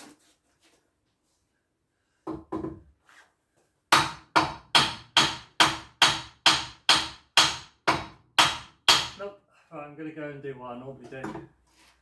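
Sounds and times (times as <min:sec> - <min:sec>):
hammer striking metal: 0:04.0 - 0:09.2.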